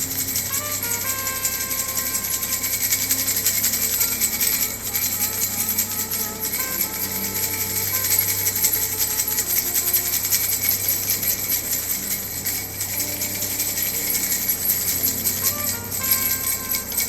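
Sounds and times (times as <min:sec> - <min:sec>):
baby rattle shaken: 0:00.0 - 0:17.0.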